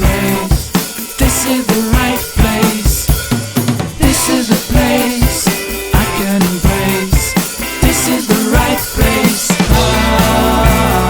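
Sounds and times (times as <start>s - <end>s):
drum-kit beat: 0.0s - 11.0s
pop-rock song: 0.0s - 11.0s
sustained guitar or keyboard chords: 4.0s - 11.0s.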